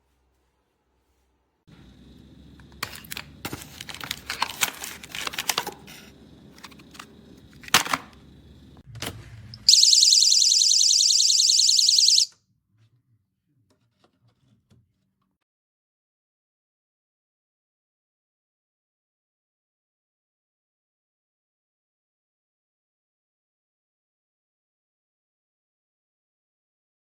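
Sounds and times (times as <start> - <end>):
clicks and rustling of handling: 2.6 - 8.2
alarm siren warbling: 9.7 - 12.3.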